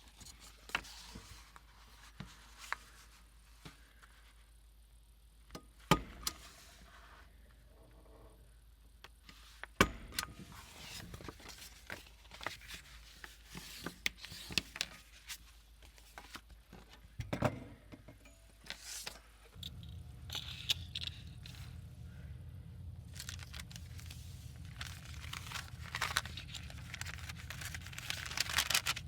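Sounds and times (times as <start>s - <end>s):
hands handling packing materials: 10.6s - 17.1s, 23.0s - 29.0s
low steady hum: 15.0s - 29.0s.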